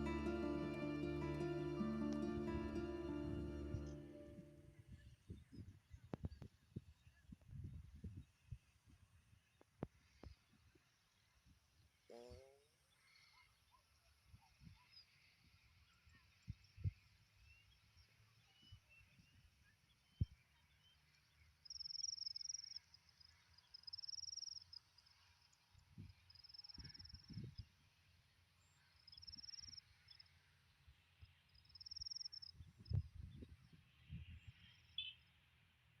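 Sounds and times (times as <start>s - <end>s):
faint outdoor background: 0.0s - 36.0s
insect chirping trills: 31.5s - 32.5s.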